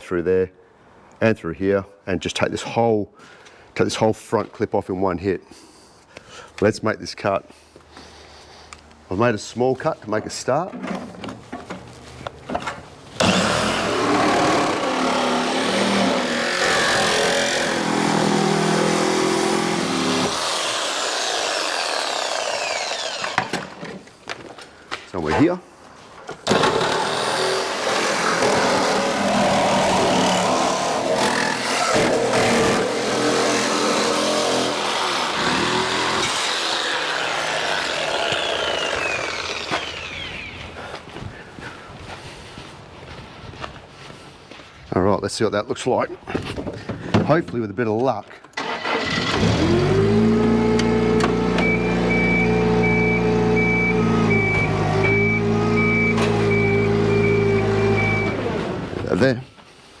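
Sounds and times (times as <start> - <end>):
chainsaw cutting sheet metal: 13.1 - 23.8, 26.4 - 40.6, 48.6 - 59.0
engine running: 13.2 - 23.4, 26.7 - 40.7, 48.6 - 59.0
reversing alarm beeping: 51.5 - 58.5.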